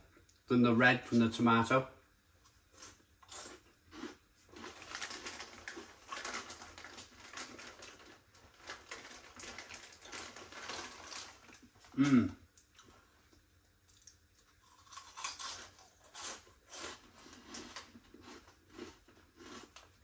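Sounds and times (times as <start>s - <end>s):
foil snack packet rustling: 4.5s - 11.7s.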